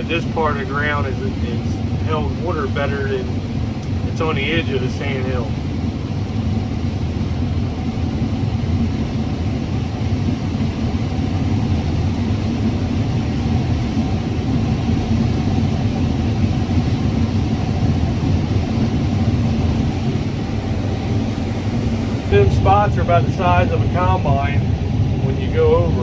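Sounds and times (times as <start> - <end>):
combine harvester rumbling: 0.0 - 6.6, 11.4 - 24.7.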